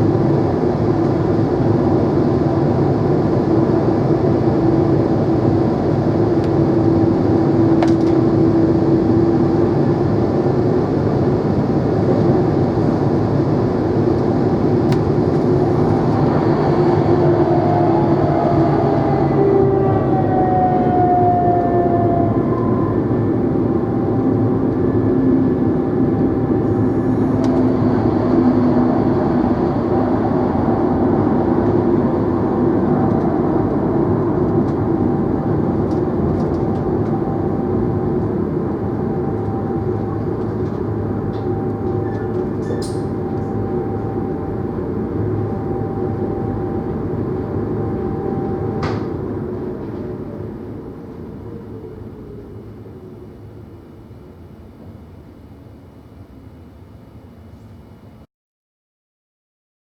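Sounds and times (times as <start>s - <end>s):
train rumbling with motor whine: 0.0s - 58.2s.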